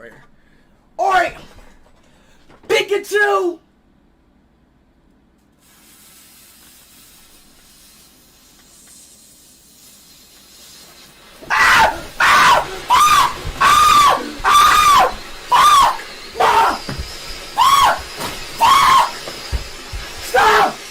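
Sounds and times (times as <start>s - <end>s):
firework fuse hissing: 5.4s - 20.9s
firework high-pitched squeals: 6.9s - 20.9s.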